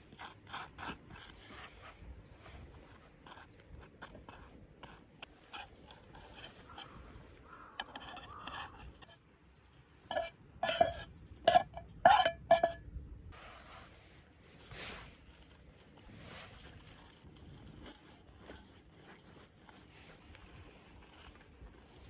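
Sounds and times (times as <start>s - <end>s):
metal cookware clinking: 10.1s - 12.8s.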